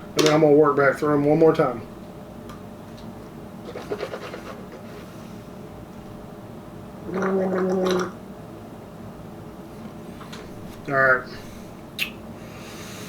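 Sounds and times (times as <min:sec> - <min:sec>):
person gargling: 0:07.0 - 0:08.2.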